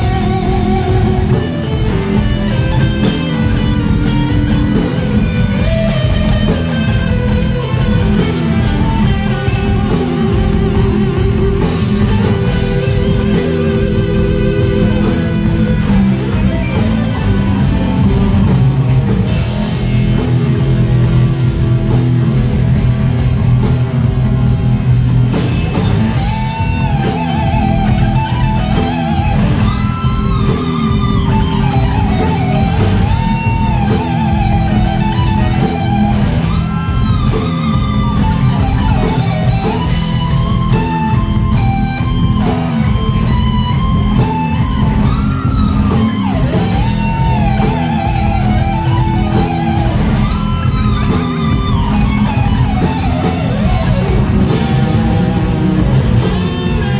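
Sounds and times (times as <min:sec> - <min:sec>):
bass guitar: 0:00.0 - 0:56.9
electric guitar lead with bent notes: 0:00.0 - 0:56.9
steady drum beat: 0:00.0 - 0:56.9.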